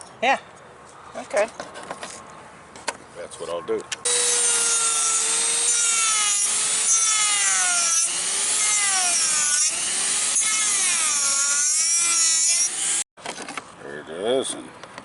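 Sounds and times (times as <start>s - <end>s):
power tool high-pitched whine: 4.1s - 13.0s.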